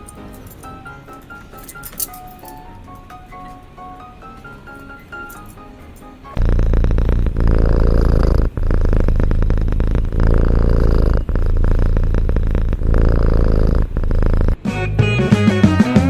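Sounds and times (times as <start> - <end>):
cat purring loudly: 6.3 - 14.6.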